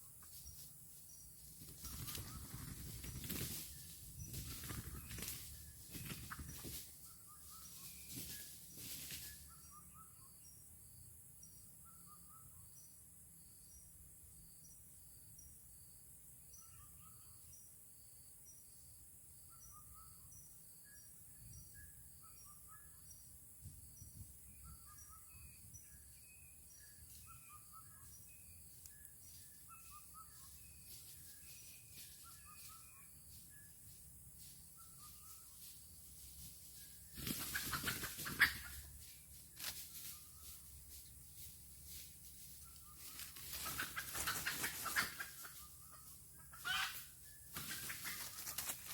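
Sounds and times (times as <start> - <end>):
high insect hiss: 0.0 - 7.0, 7.6 - 9.5, 28.0 - 48.9
short bird calls: 46.5 - 48.7.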